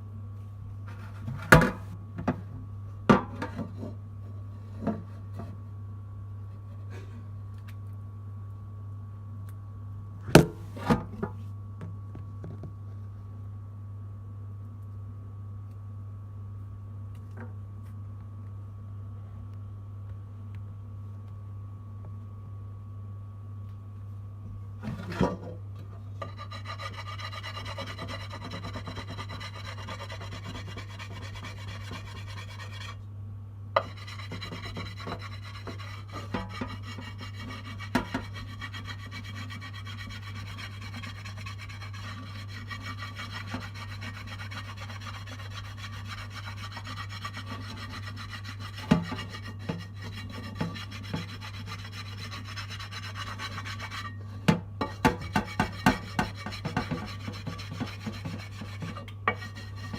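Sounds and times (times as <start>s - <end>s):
low steady hum: 0.0s - 59.9s
tablet rasping against a pan: 26.2s - 33.0s, 33.8s - 59.9s.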